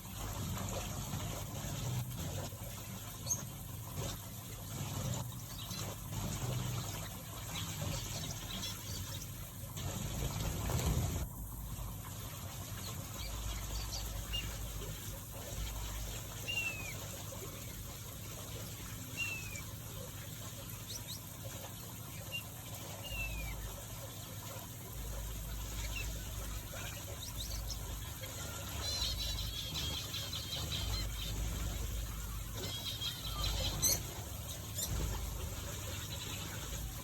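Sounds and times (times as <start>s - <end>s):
finches calling: 25.4s - 36.9s.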